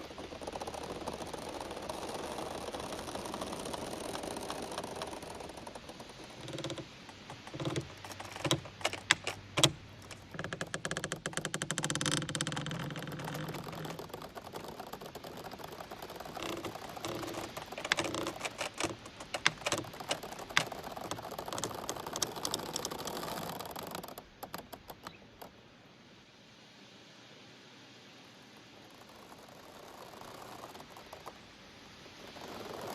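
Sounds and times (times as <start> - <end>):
bamboo stalks creaking and clicking: 0.0 - 25.6, 28.6 - 32.9.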